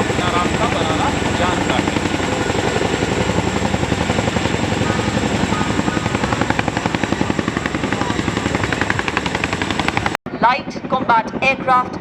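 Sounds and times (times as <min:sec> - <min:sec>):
helicopter rotor blades chopping: 0:00.0 - 0:12.0.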